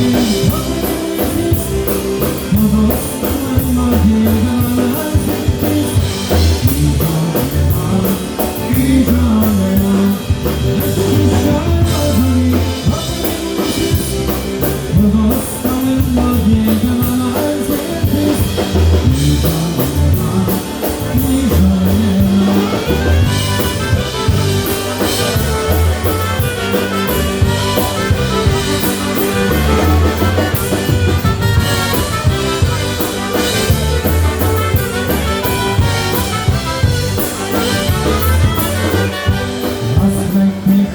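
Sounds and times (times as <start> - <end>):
drum kit: 0.0 - 40.9
guitar: 0.0 - 40.9
polka band playing dance tune: 0.0 - 40.9.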